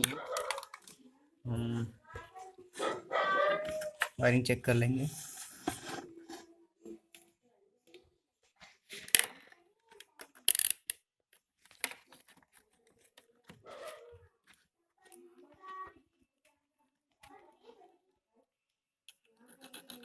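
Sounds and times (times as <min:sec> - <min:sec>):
handling rustles and clicks: 0:00.0 - 0:01.1, 0:08.5 - 0:15.8.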